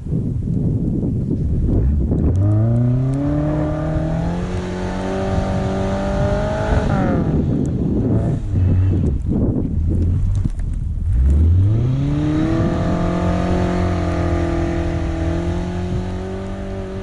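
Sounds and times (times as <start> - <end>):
car engine revving: 1.8 - 9.1, 11.0 - 17.0.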